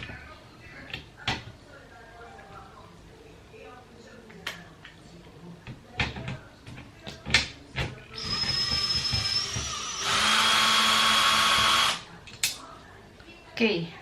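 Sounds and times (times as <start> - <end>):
power screwdriver whine: 8.2 - 12.0.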